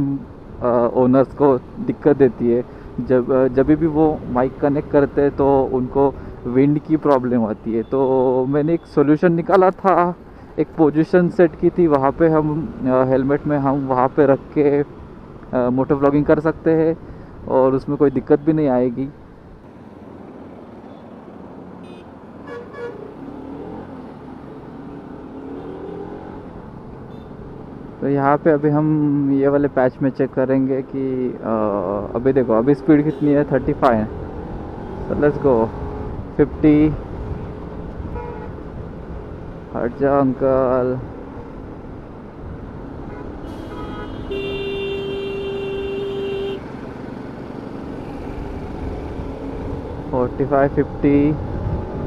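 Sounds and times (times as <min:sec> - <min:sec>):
motorcycle engine and road hum: 0:00.0 - 0:52.0
horn toots: 0:21.8 - 0:23.1, 0:38.1 - 0:38.6, 0:43.1 - 0:46.6
wind rush in helmet: 0:51.4 - 0:52.0.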